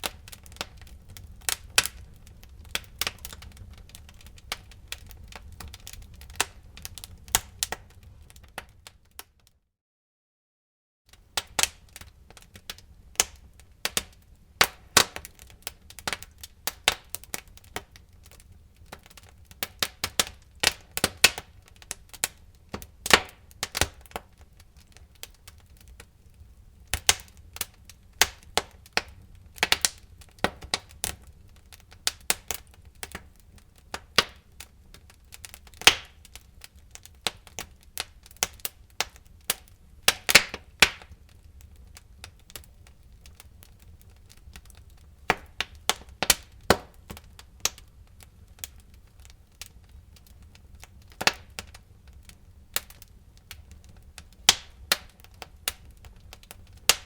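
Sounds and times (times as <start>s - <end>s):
wood fire crackling: 0.0s - 9.5s, 11.1s - 57.0s.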